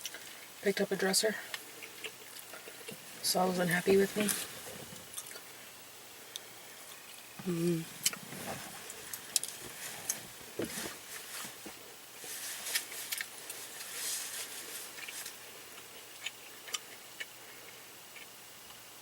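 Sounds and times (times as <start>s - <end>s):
soft crackling: 0.0s - 16.0s
chewing: 1.5s - 3.2s, 12.6s - 18.8s.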